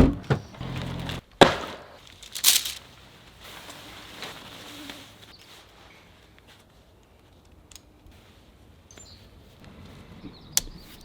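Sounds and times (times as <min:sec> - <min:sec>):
soft rustling of camping gear: 0:02.0 - 0:10.2.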